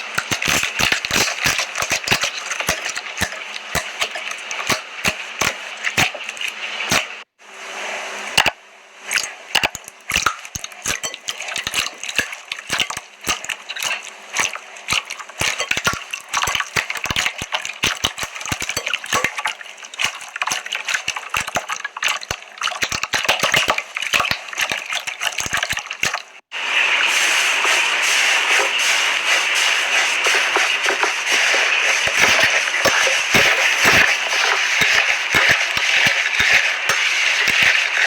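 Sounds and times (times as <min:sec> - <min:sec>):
rustling hiss: 0:26.5 - 0:38.0.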